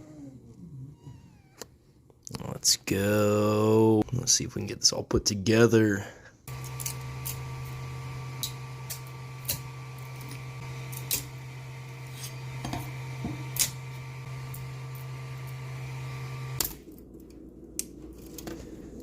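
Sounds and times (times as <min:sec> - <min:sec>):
steady machine hum: 0:06.5 - 0:16.6.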